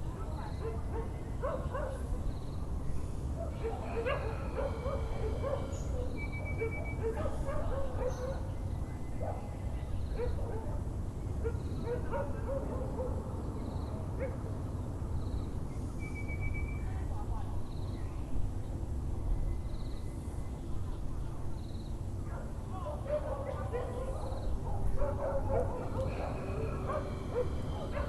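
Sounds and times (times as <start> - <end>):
dogs barking and yipping: 0.5 - 2.0, 3.4 - 8.5, 11.4 - 13.3, 22.3 - 28.0
birds calling: 25.2 - 28.0.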